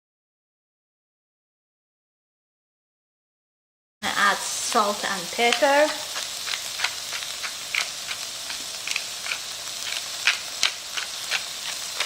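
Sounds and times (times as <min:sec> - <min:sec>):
vegetables sizzling in a pan: 0:04.0 - 0:12.0
sharp crackles and pops: 0:04.7 - 0:12.0.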